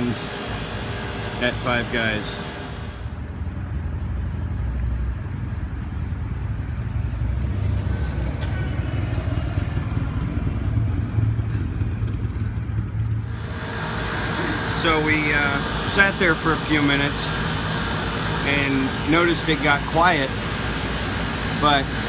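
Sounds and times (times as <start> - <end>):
fan motor humming: 0.0 - 3.2, 8.1 - 22.0
air conditioning units droning: 0.0 - 22.0.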